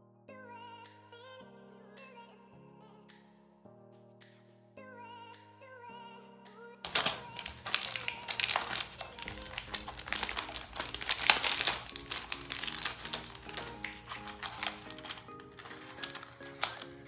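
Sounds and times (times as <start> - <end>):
background music: 0.0 - 17.0
plastic packaging crinkling: 6.9 - 17.0.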